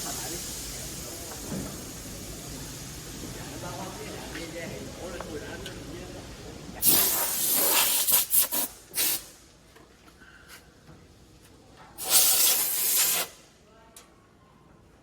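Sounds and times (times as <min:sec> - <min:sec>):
compressed air hissing bursts: 0:00.0 - 0:04.0, 0:06.8 - 0:09.5, 0:12.0 - 0:13.5.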